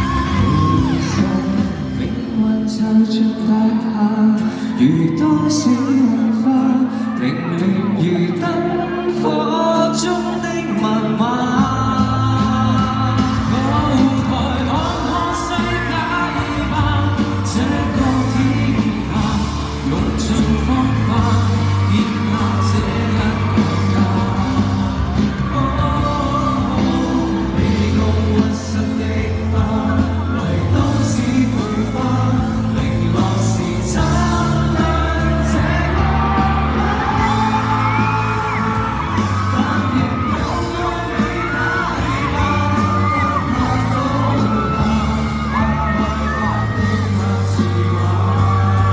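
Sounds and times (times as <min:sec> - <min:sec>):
audience shouting: 0:00.0 - 0:01.6, 0:13.4 - 0:28.5, 0:32.6 - 0:48.9
live pop band playing: 0:00.0 - 0:48.9
person singing: 0:00.0 - 0:48.9.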